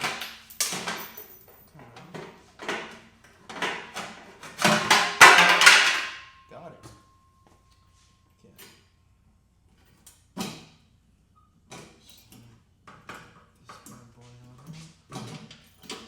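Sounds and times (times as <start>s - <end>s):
tools knocking and clattering: 0.0s - 7.0s, 11.7s - 16.0s.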